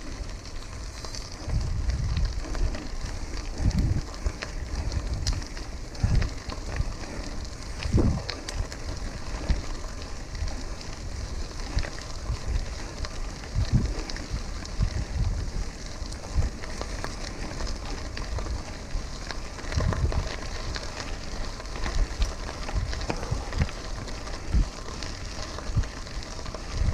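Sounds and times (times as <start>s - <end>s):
bicycle tyres rolling on road: 0.0s - 26.9s
wind thumps on microphone: 7.8s - 8.3s, 13.6s - 14.0s.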